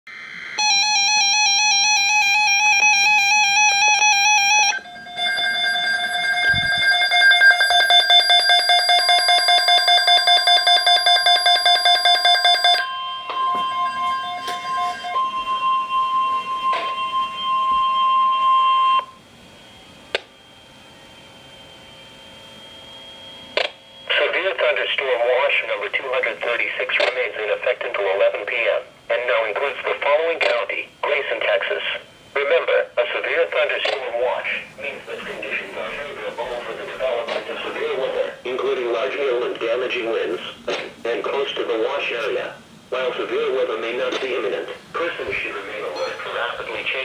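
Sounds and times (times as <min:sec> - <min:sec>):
steady higher tone: 0:00.1 - 0:10.0, 0:10.7 - 0:24.4
steady buzzy electronic tone: 0:12.8 - 0:24.5.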